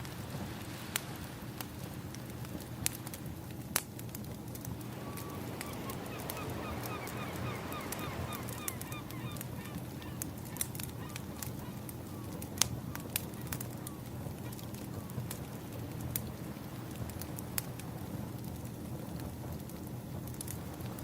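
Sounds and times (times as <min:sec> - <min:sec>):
wood fire crackling: 0:00.0 - 0:21.0
waves rushing: 0:04.4 - 0:18.2, 0:20.6 - 0:21.0
bird calling: 0:04.8 - 0:15.8.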